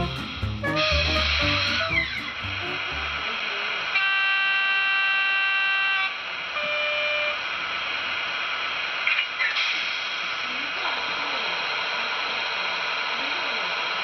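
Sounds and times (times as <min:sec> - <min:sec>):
two-tone train horn: 0:00.0 - 0:03.0, 0:03.9 - 0:07.4.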